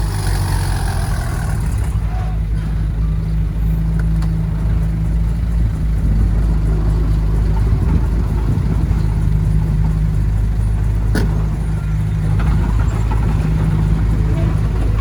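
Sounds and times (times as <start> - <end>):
diesel engine running under load: 0.0 - 15.0.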